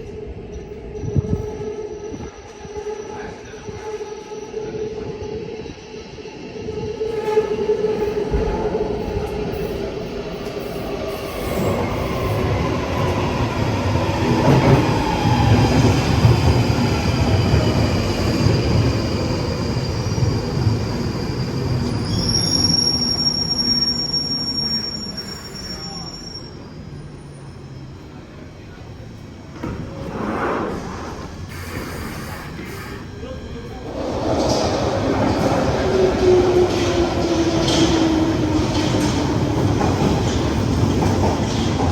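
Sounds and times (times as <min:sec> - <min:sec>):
train whine: 0:00.0 - 0:41.9
train wheels rumbling on rail: 0:06.4 - 0:26.2, 0:27.0 - 0:41.9
high brake squeal: 0:19.3 - 0:28.1, 0:31.4 - 0:33.4.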